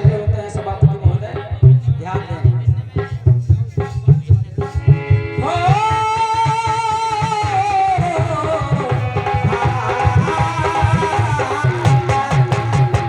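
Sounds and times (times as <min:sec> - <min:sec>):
hand drum strokes: 0:01.7 - 0:13.0.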